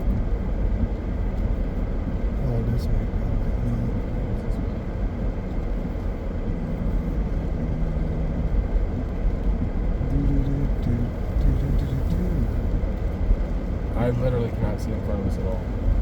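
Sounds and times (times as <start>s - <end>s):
car engine rumble: 0.0s - 16.0s
road noise: 0.0s - 16.0s.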